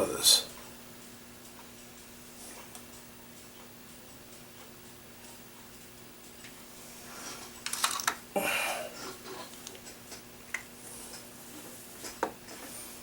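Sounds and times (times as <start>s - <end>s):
steady low hum: 0.0s - 13.0s
small metal parts clicking: 7.6s - 8.2s.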